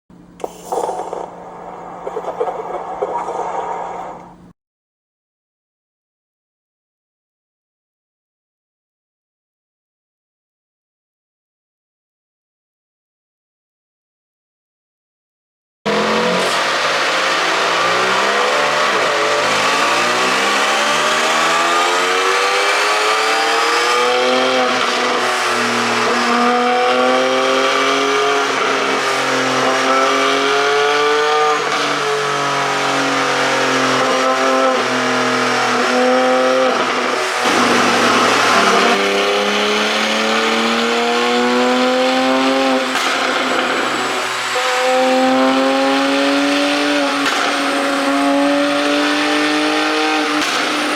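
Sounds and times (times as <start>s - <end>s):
car engine accelerating: 15.9s - 50.9s.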